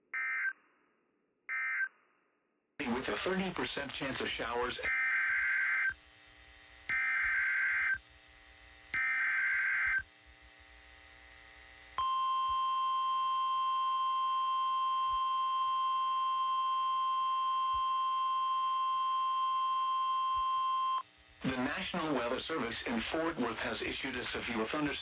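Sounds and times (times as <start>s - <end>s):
steady warning alarm tone: 4.7s - 6.0s, 6.9s - 8.0s, 8.9s - 10.1s, 12.0s - 21.0s.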